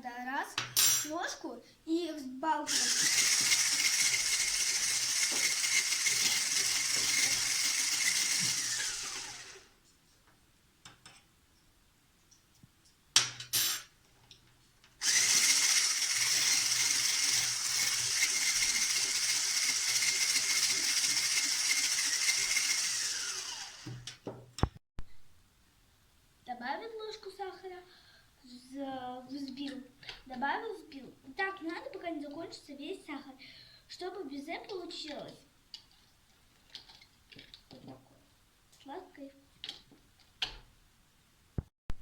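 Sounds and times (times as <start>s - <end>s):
electric blender whining: 2.7s - 9.7s, 15.0s - 24.2s.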